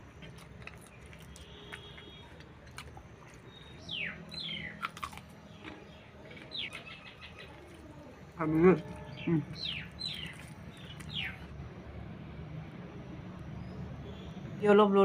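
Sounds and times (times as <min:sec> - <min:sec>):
birds chirping: 0:00.0 - 0:11.6.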